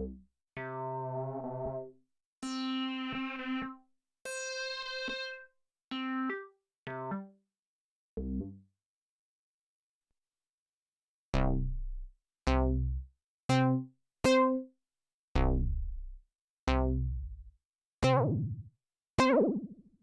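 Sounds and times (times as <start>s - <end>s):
plucked synthesizer notes: 11.4s - 14.6s, 15.4s - 18.6s.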